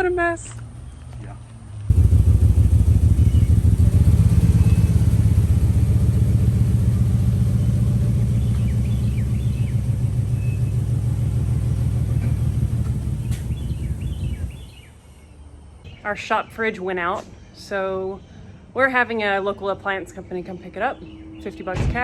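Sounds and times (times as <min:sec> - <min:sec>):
vehicle engine idling: 0:01.9 - 0:14.8
faint bird chirps: 0:02.0 - 0:16.1.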